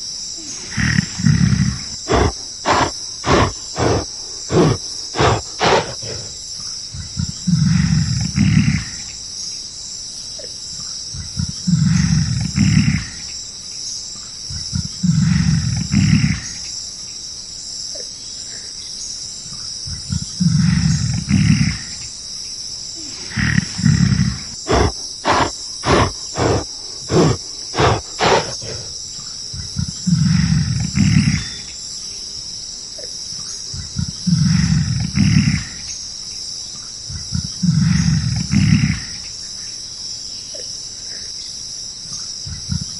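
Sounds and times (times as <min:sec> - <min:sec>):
insects buzzing: 0:00.0 - 0:42.9
gorilla roaring: 0:00.4 - 0:06.4, 0:07.2 - 0:09.1, 0:11.7 - 0:13.3, 0:15.0 - 0:16.7, 0:20.4 - 0:22.1, 0:23.0 - 0:29.0, 0:30.0 - 0:31.6, 0:34.2 - 0:35.9, 0:37.6 - 0:39.3.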